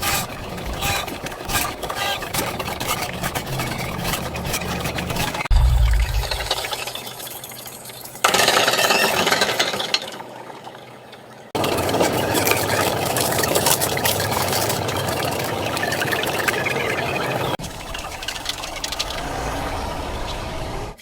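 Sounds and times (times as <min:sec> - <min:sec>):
heavy machinery engines running: 0:04.3 - 0:06.9.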